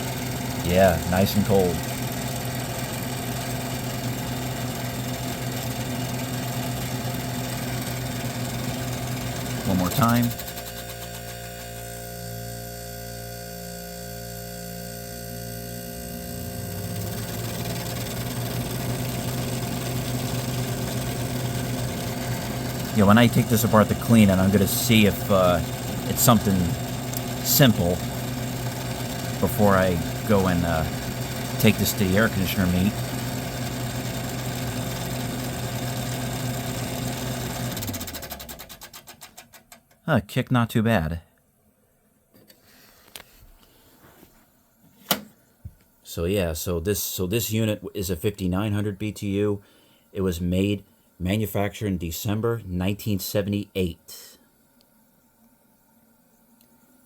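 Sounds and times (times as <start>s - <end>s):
fan spinning down: 0.0s - 39.0s
air conditioner humming: 0.0s - 57.0s.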